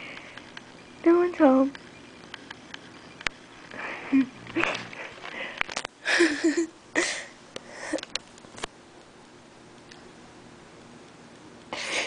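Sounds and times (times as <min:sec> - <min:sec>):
sharp clicks: 0:01.7 - 0:03.8.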